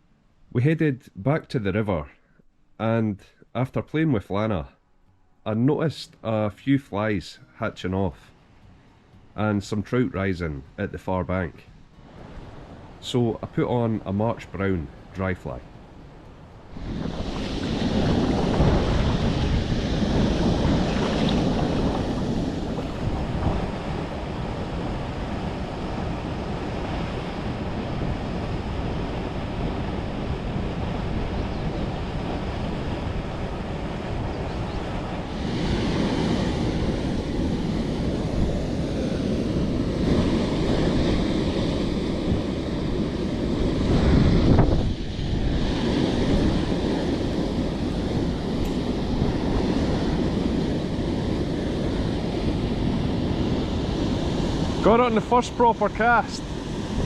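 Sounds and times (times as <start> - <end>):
wind buffeting microphone: 11.9 - 57.0
river water rushing: 15.7 - 28.0.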